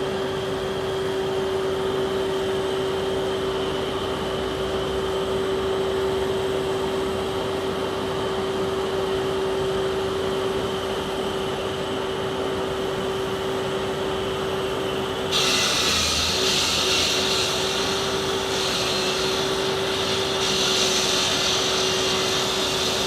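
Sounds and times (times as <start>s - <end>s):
road saw cutting asphalt: 15.3s - 23.0s.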